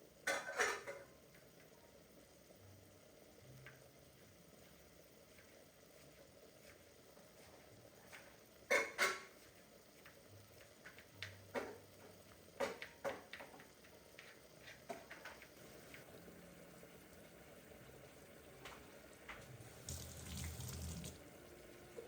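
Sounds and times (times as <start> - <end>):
dishes and utensils clinking: 0.3 - 1.1.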